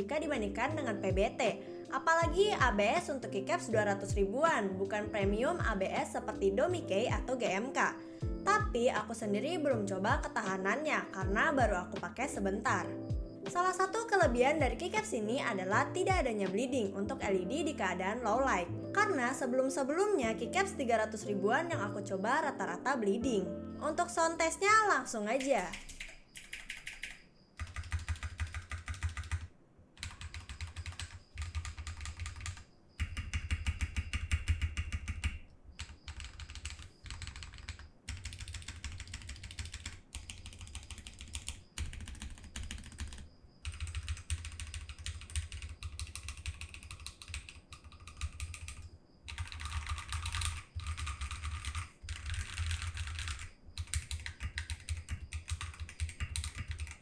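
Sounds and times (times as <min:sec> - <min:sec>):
fast mechanical keyboard typing: 0:24.7 - 0:57.0.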